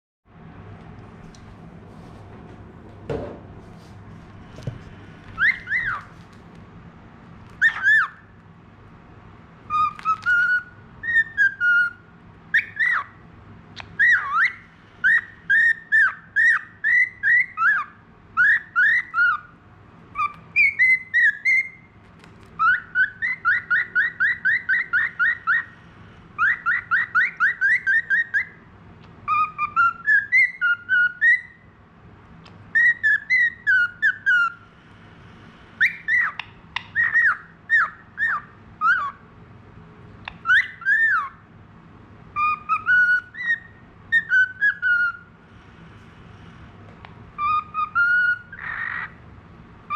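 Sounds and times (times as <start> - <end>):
steady low hum: 0.3 - 49.9
budgerigar whistling: 5.4 - 6.1, 7.6 - 8.3, 9.7 - 13.2, 13.8 - 19.5, 20.2 - 21.9, 22.6 - 25.8, 26.4 - 28.6, 29.3 - 31.6, 32.7 - 34.6, 35.8 - 39.2, 40.2 - 41.4, 42.4 - 45.3, 47.4 - 49.2.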